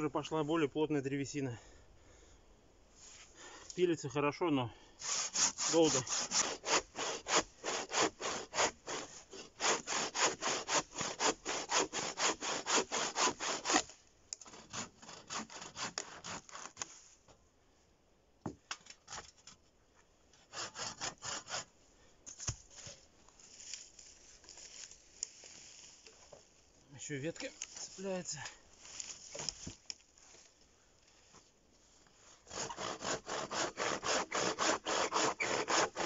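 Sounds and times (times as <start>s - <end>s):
hand saw rasping through wood: 5.0s - 16.8s, 20.5s - 21.7s, 32.4s - 36.0s.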